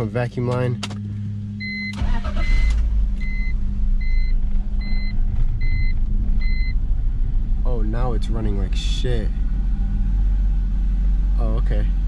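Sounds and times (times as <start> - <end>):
car engine cranking and running: 0.0 - 12.0
dashboard warning chime beeping: 1.6 - 6.8.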